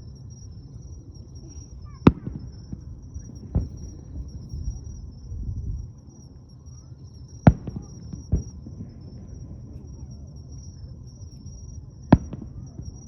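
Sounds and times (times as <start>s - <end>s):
high insect trill: 0.0s - 13.0s
low background murmur: 0.5s - 13.0s
fireworks bursting: 2.0s - 4.4s, 7.5s - 10.0s, 12.0s - 13.0s.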